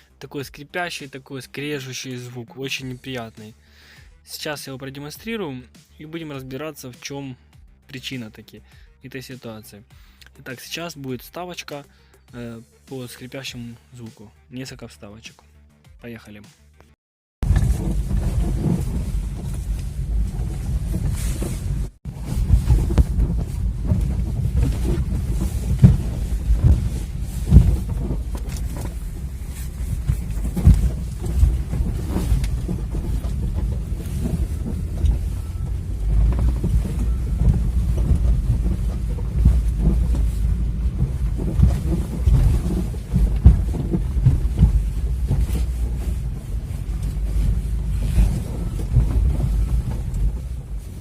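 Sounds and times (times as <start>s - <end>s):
car road and wind rumble: 17.4s - 51.0s
creaks and knocks: 17.4s - 51.0s
suspension squeaking and grinding: 17.4s - 51.0s.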